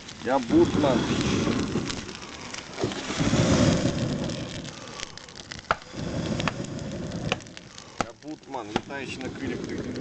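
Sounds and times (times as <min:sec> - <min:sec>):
campfire crackling and popping: 0:00.0 - 0:10.0
low rumbling noise: 0:00.4 - 0:07.9.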